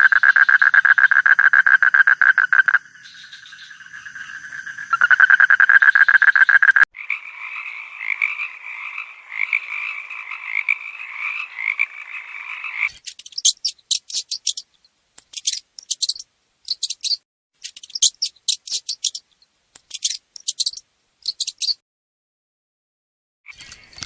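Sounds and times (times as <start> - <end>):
frogs croaking: 0.0 - 14.6
high-pitched clicking animal calls: 12.5 - 21.8.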